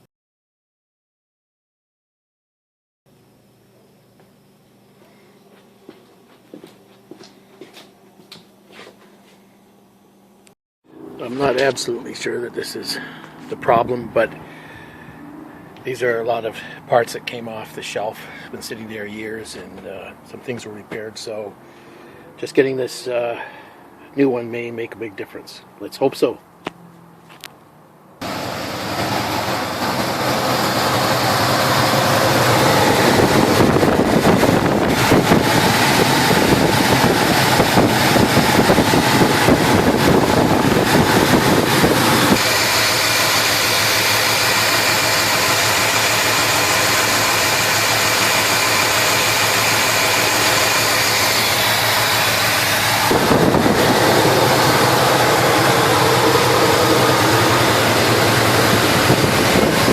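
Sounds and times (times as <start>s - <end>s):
engine starting and running: 28.2s - 59.9s.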